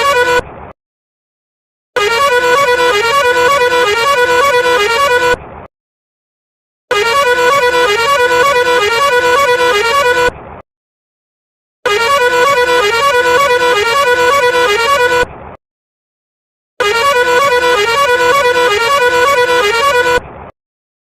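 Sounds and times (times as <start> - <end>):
musical vehicle horn tune: 0.0 - 0.5, 2.0 - 5.4, 6.9 - 10.4, 11.8 - 15.3, 16.8 - 20.3.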